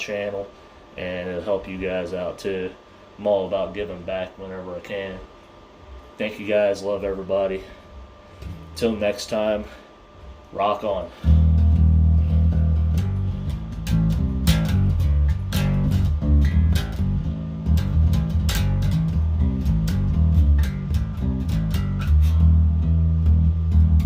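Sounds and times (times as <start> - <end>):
electric bass riff: 8.3 - 9.6, 10.9 - 24.0.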